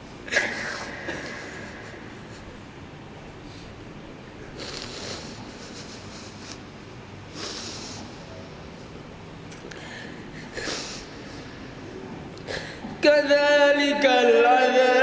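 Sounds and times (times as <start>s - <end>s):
steady background hiss: 0.0s - 15.0s
man breathing in: 9.7s - 11.6s.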